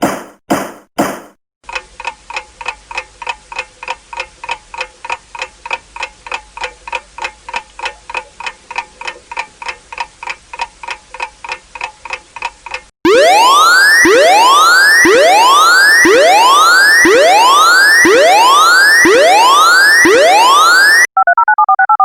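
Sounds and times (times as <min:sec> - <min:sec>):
wooden gavel strikes: 0:00.0 - 0:01.4
clock ticking: 0:01.0 - 0:20.8.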